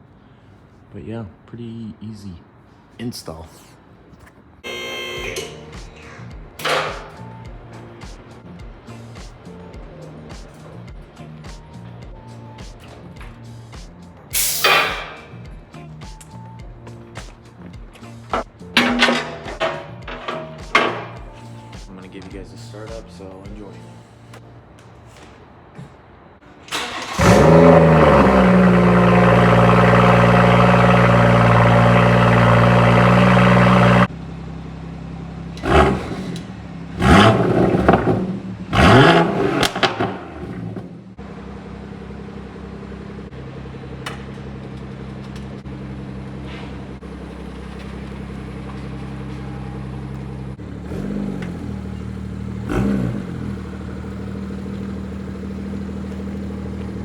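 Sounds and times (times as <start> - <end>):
car engine starting and idling: 4.3 - 21.9, 26.3 - 57.0
car engine revving: 26.7 - 57.0.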